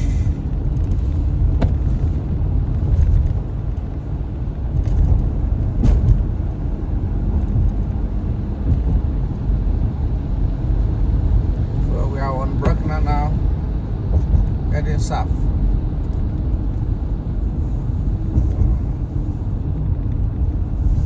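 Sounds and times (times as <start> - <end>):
car engine and tyre rumble: 0.0 - 21.0.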